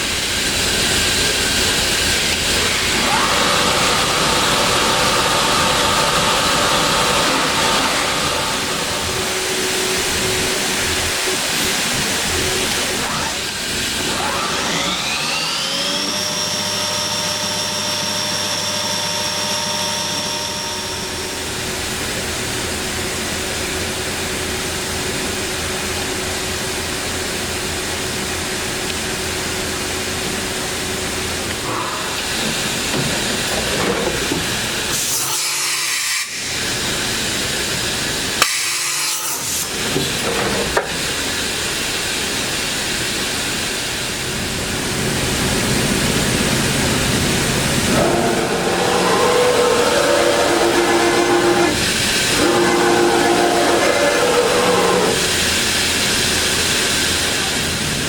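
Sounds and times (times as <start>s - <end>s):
machine high whine: 0.0s - 58.0s
machining center hissing: 41.0s - 58.0s.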